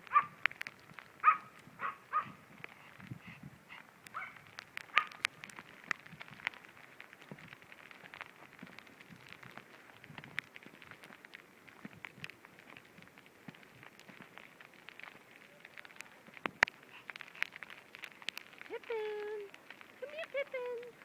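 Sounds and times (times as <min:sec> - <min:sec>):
dogs yapping: 0:00.0 - 0:00.5, 0:01.2 - 0:05.3
light ticks and crackles: 0:00.0 - 0:21.0.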